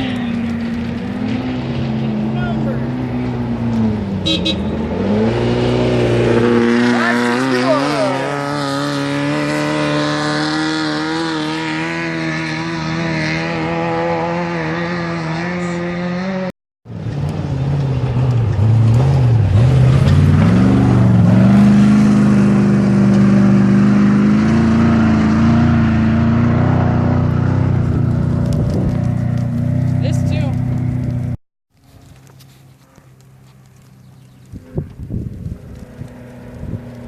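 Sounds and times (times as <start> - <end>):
louder engine revving: 0.0 - 16.5, 17.2 - 31.4
race vehicle engine running: 0.0 - 37.0.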